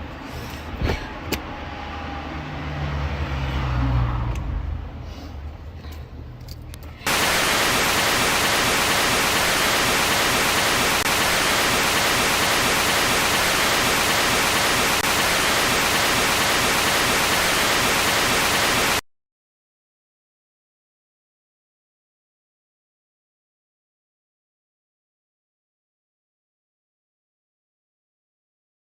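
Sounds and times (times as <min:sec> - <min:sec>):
static hiss: 0:07.1 - 0:19.0.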